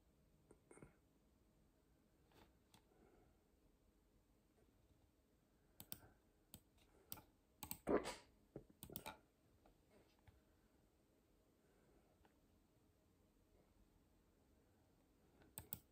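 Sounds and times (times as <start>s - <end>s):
soft clicks: 5.8s - 7.8s, 8.7s - 10.4s, 15.4s - 15.9s.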